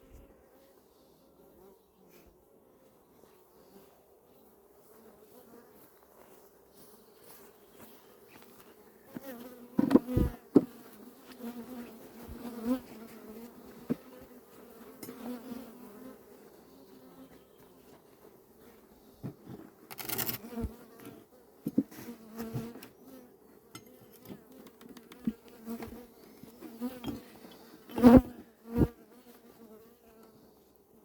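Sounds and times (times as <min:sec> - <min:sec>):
honeybees buzzing: 0:07.0 - 0:18.8, 0:19.8 - 0:30.3.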